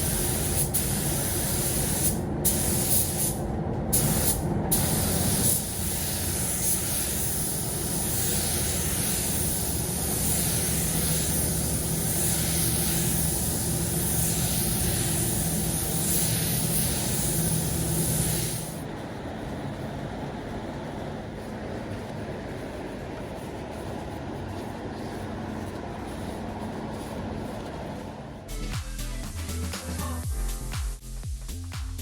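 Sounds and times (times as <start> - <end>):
paint spray gun hissing: 0.0 - 3.4, 4.0 - 18.8.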